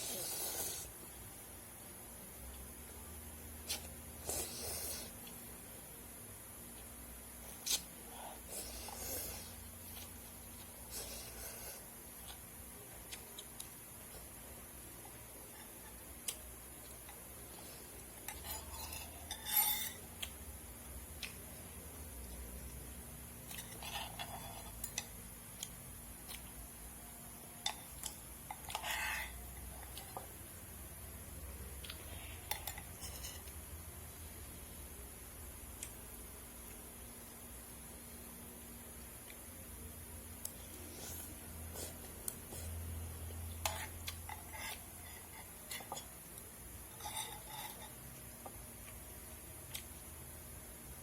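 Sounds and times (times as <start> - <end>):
steady low hum: 0.0 - 51.0
utensil scraping bowl: 18.2 - 20.0, 28.5 - 29.6, 43.6 - 46.1, 46.9 - 48.1.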